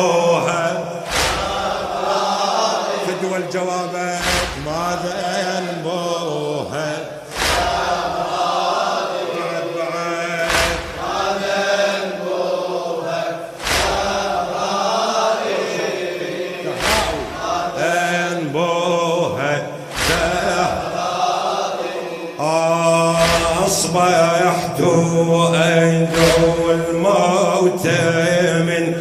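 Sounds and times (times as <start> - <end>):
men chanting a lament: 0.0 - 29.0
heavy percussive beat: 0.9 - 3.2, 4.2 - 5.7, 7.3 - 9.2, 10.4 - 11.8, 13.5 - 15.1, 16.7 - 18.2, 19.8 - 21.5, 22.8 - 25.2, 25.8 - 27.1.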